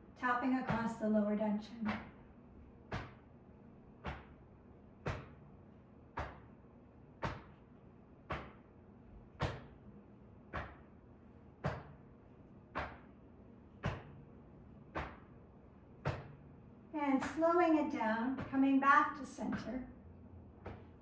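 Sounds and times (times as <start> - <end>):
rhythmic hand slaps on body: 0.6 - 1.1, 1.7 - 21.0.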